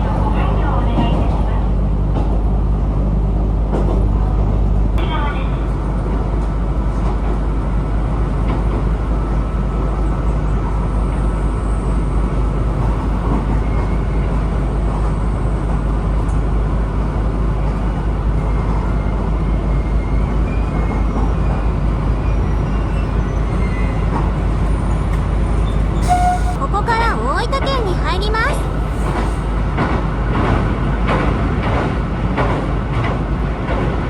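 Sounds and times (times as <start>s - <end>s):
train rumbling on rails: 0.0s - 34.0s.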